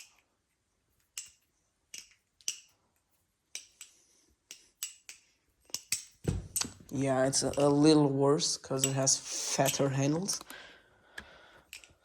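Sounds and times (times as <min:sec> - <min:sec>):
balisong handles clacking: 0:01.0 - 0:02.8, 0:03.5 - 0:08.0, 0:08.7 - 0:10.6, 0:11.2 - 0:12.0.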